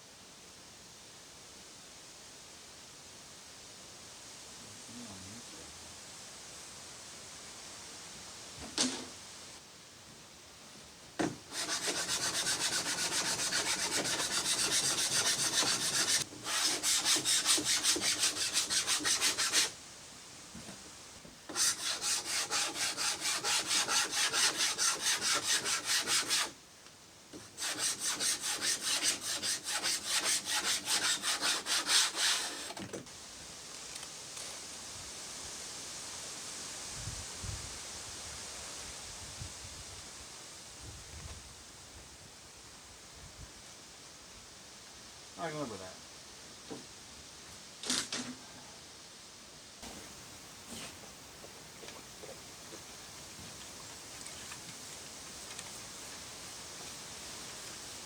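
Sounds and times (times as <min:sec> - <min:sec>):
hand strokes rubbing wood: 0:11.5 - 0:19.7, 0:21.5 - 0:26.5, 0:27.4 - 0:32.8, 0:49.8 - 0:58.0.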